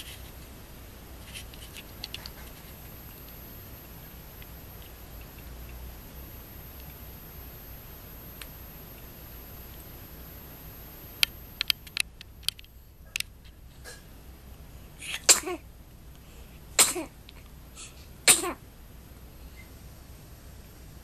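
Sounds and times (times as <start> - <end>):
short clicks: 11.1 - 13.3
person sneezing: 15.0 - 15.6, 17.8 - 18.6.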